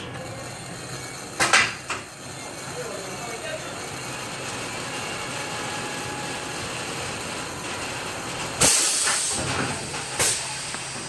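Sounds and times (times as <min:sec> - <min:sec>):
mechanical background noise: 0:00.0 - 0:11.0
loud hiss: 0:08.6 - 0:11.0.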